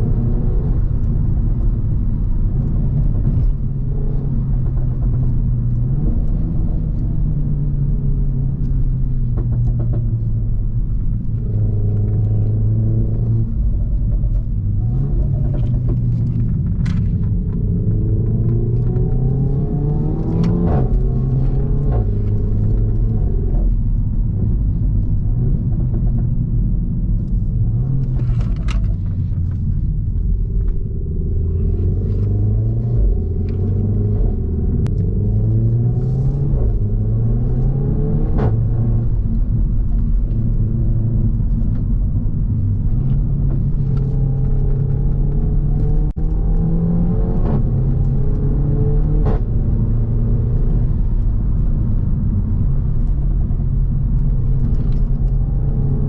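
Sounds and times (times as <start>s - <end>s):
exhaust pops and cracks: 0.7s - 7.0s, 8.4s - 46.6s, 50.7s - 56.0s.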